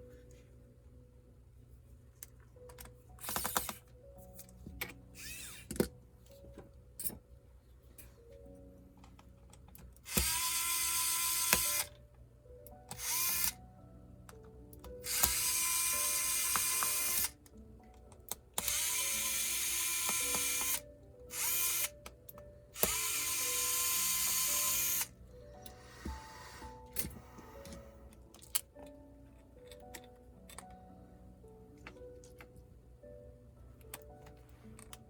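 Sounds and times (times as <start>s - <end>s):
electric screwdriver whining: 5.2s - 5.9s, 10.0s - 11.9s, 12.9s - 13.6s, 15.0s - 17.4s, 18.6s - 22.0s, 22.8s - 28.1s.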